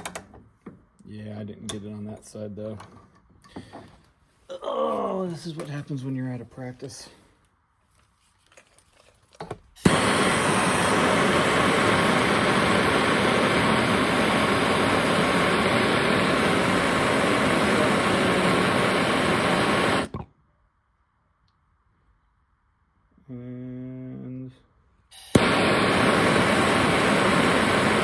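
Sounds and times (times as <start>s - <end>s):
torch flame hissing: 9.8s - 20.2s, 25.2s - 28.0s
torch igniting pop: 9.8s - 20.3s, 25.2s - 28.0s.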